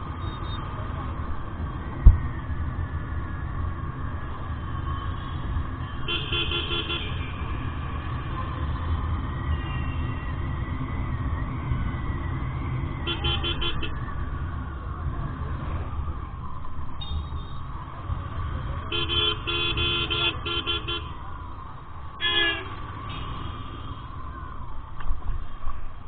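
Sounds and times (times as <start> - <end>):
motorcycle engine rumble: 0.0 - 26.0
vehicle horns beeping: 0.2 - 0.6, 5.9 - 7.5, 13.0 - 14.0, 17.0 - 17.7, 18.9 - 21.2, 22.2 - 22.8.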